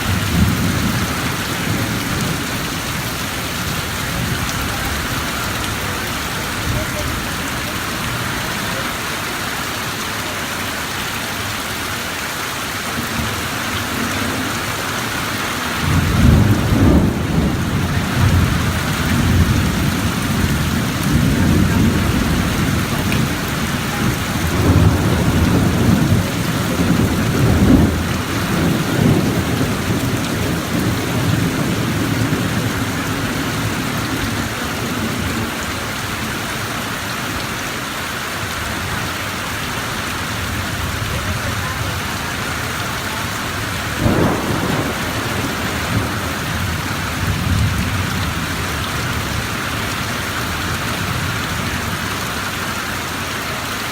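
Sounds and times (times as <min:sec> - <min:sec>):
thunder rumbling: 0:00.0 - 0:08.9, 0:13.1 - 0:36.4, 0:43.2 - 0:52.0
steady rain: 0:00.0 - 0:53.9.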